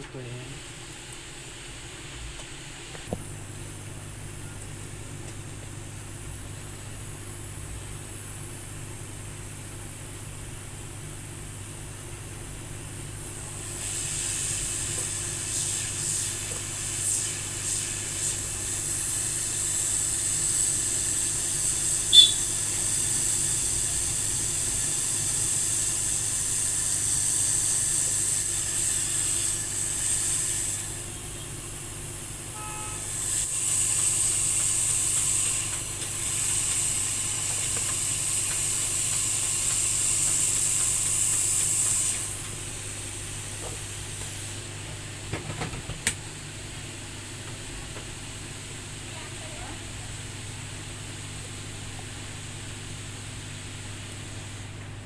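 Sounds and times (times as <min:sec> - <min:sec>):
hot air station hissing: 0:13.1 - 0:45.2.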